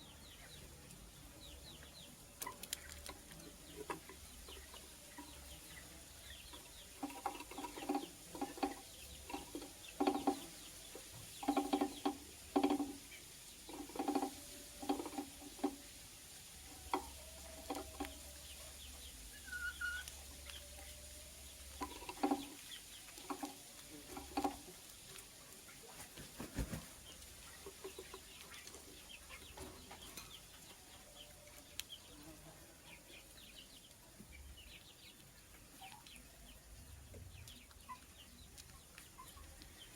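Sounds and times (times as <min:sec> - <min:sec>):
bird clucking: 0:16.9 - 0:20.2
high bird chirp: 0:19.0 - 0:20.8.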